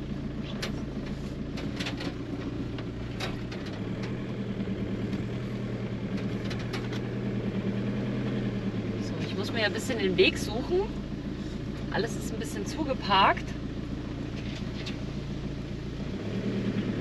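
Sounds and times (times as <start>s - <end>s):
diesel engine humming: 0.0s - 17.0s
light clicks and rattles: 0.4s - 4.3s, 6.1s - 7.1s.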